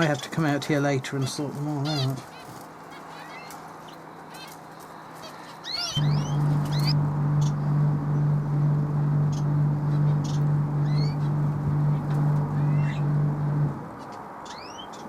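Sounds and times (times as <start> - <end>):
small birds chirping: 1.2 - 7.0
loud low drone: 6.0 - 14.0.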